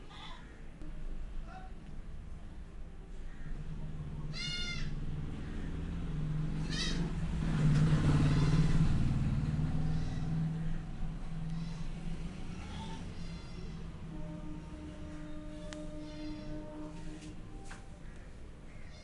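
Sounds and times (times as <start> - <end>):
high-pitched animal call: 12.5 - 13.8, 15.9 - 16.7
rustling noise: 15.5 - 18.0.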